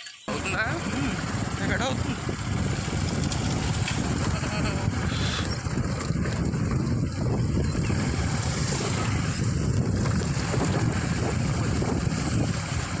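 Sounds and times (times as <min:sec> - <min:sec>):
wind buffeting microphone: 0:00.3 - 0:13.0.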